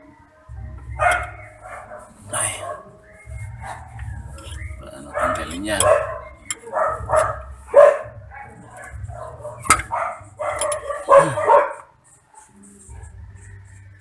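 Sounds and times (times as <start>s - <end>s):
dog barking: 0.9s - 3.0s, 3.6s - 4.1s, 5.0s - 13.2s.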